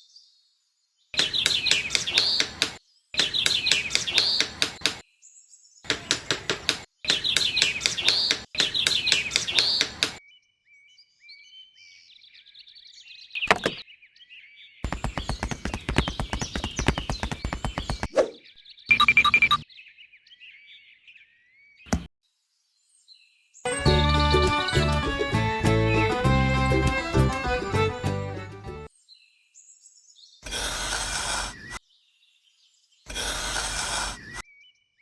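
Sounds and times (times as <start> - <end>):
birds chirping: 0.0 - 22.0, 28.9 - 35.0
knock: 13.5 - 13.8.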